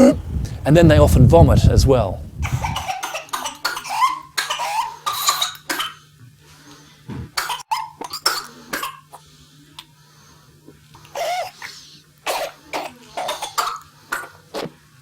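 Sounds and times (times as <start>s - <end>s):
child coughing: 2.4s - 6.1s, 7.1s - 9.2s, 11.1s - 14.7s.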